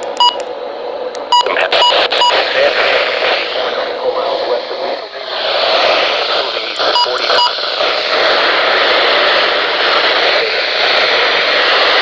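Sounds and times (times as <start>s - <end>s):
radio static hiss: 1.2s - 12.0s.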